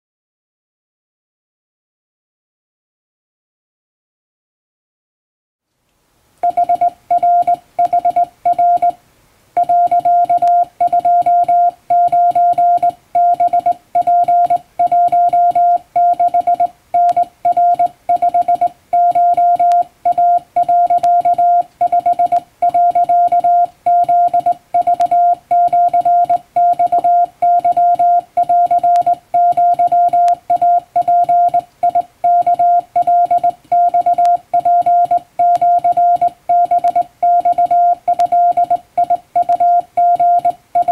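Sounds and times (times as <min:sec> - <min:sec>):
morse code tone beeping: 0:06.4 - 0:09.0, 0:09.6 - 0:40.9.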